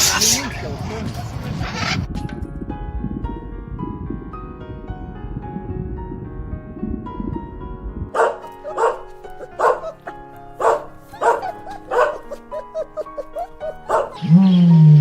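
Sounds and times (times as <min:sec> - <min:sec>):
background music: 0:00.0 - 0:15.0
dog barking: 0:08.2 - 0:14.3.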